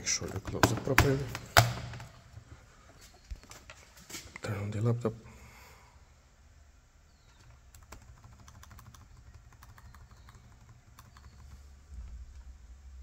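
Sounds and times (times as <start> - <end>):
laptop keyboard typing: 7.3 - 11.8.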